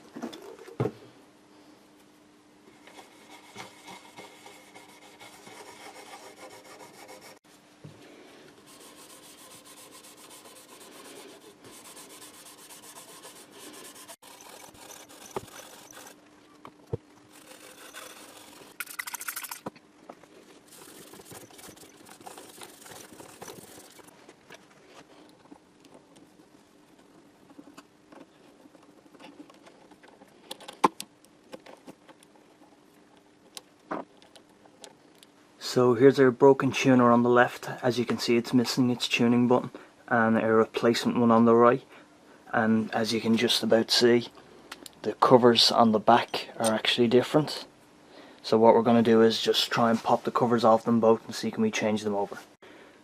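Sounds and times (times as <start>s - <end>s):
faint steady hum: 0.0s - 53.0s
hand rubbing acoustic guitar: 20.4s - 24.1s.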